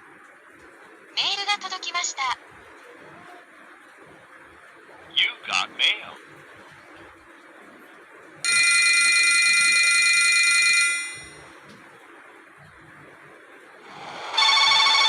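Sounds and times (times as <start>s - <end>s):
phone electronic alert chord: 13.9s - 15.0s
pulsing electronic tone: 13.9s - 15.0s.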